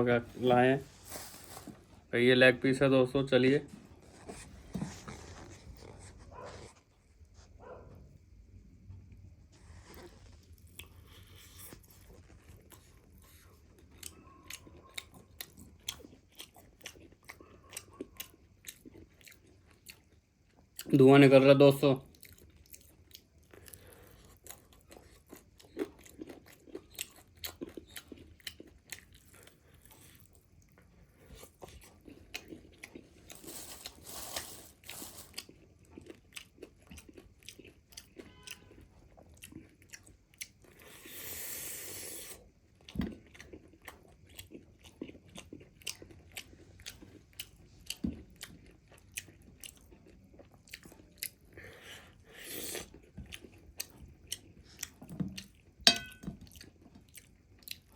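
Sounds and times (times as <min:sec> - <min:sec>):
wet chewing: 0:10.0 - 0:20.9, 0:22.1 - 0:57.9
crunching fried chicken: 0:22.0 - 0:41.6, 0:42.4 - 0:55.8.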